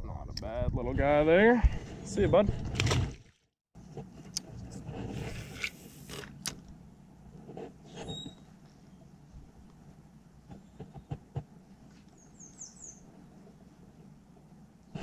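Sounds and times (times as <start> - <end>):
handling clicks and scrapes: 3.8 - 6.7.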